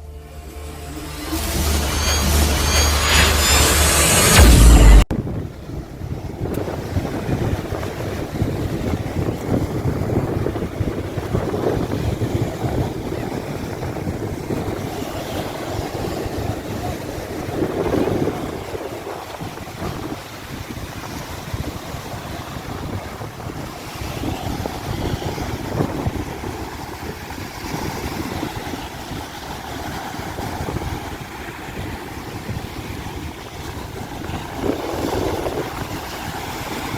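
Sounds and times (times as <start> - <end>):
sea surf: 0.0 - 36.9
wind buffeting microphone: 5.0 - 36.9.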